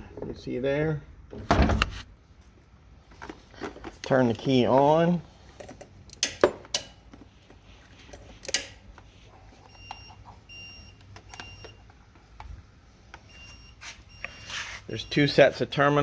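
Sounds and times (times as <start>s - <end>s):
electronic warning beeps: 9.6s - 11.8s, 13.3s - 15.4s.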